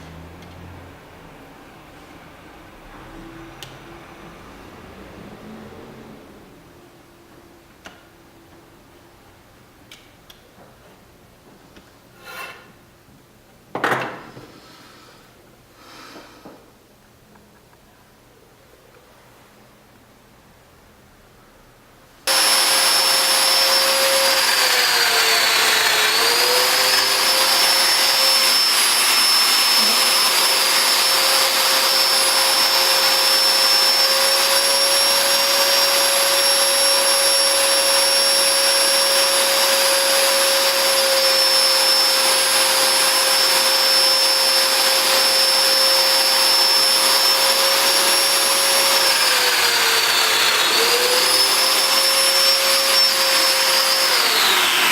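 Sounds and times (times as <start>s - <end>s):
electric motor high whine: 22.3s - 54.9s.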